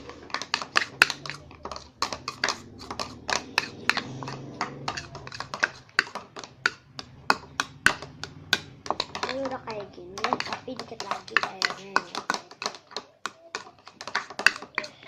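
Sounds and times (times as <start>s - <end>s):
stirrer clicking against container: 0.0s - 15.0s.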